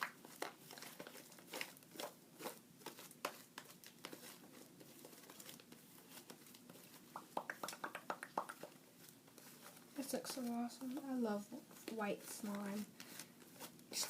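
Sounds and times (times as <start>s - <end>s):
slime being kneaded by hand: 0.0s - 14.0s.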